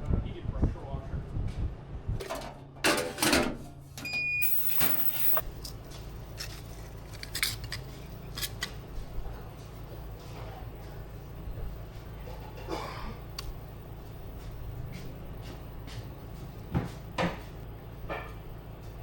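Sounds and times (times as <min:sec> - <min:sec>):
short high beep: 0:04.1 - 0:05.4
metal clinking and clattering: 0:04.4 - 0:05.4.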